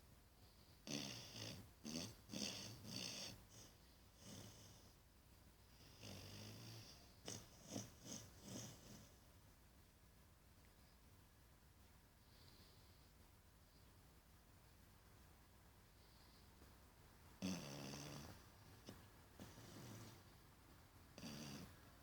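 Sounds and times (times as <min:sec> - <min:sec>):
puppy snoring and snorting: 0:00.8 - 0:04.8, 0:05.8 - 0:09.2, 0:17.4 - 0:20.2, 0:21.2 - 0:21.8.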